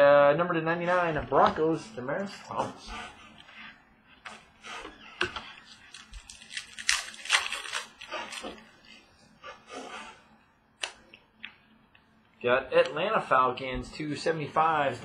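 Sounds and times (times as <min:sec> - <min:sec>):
cards and packaging rustling: 0:05.2 - 0:09.0.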